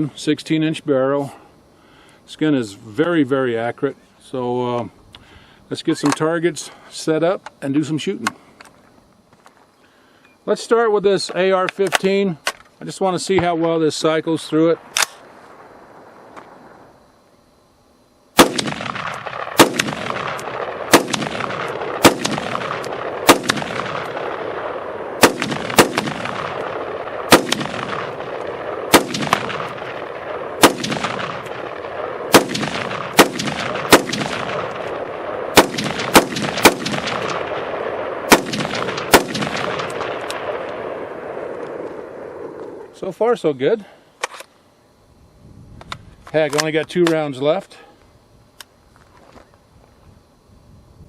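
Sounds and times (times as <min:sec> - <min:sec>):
rifle shots with echo: 0:18.4 - 0:42.6.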